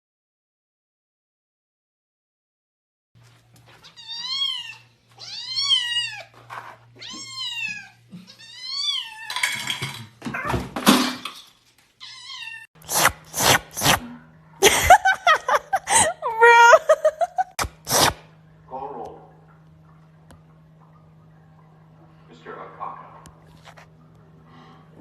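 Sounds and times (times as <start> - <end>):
cat meowing: 3.8 - 6.3, 7.0 - 9.4, 12.0 - 12.7, 16.3 - 16.9.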